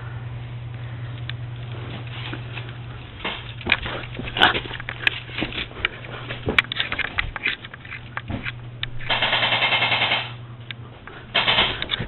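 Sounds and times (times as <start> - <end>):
airsoft gun full-auto burst: 9.1 - 10.4, 11.4 - 11.8.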